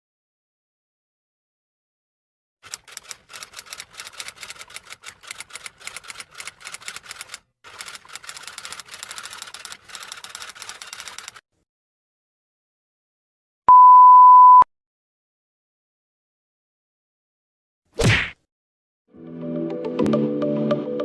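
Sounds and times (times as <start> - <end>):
rapid typing on keys: 2.6 - 11.4.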